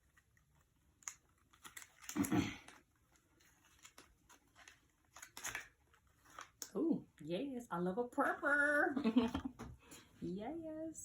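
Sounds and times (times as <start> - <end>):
packaging clicks and rustles: 0.0 - 6.7.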